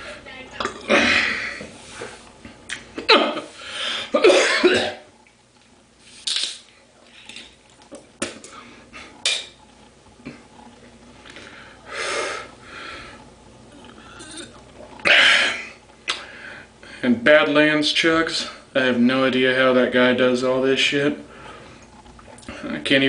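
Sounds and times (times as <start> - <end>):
man coughing: 3.0 - 3.5, 4.1 - 5.1, 15.1 - 15.8.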